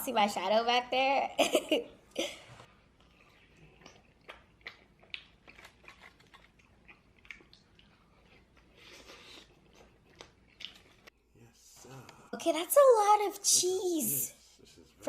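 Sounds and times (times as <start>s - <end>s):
person chewing: 2.7s - 11.2s.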